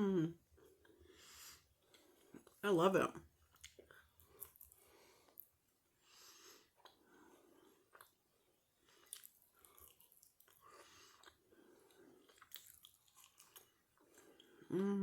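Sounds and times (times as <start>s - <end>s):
person humming: 0.0s - 0.4s, 14.7s - 15.0s
mouth chewing food: 3.4s - 5.5s, 6.6s - 14.9s.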